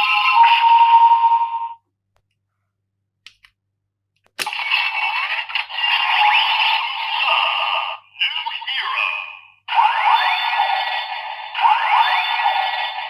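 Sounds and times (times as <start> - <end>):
toy electronic sound effects: 9.7 - 13.0.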